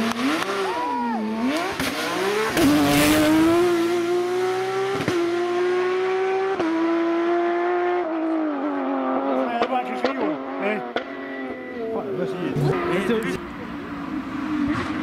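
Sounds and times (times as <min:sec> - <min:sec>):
rally car engine revving: 0:00.0 - 0:15.0.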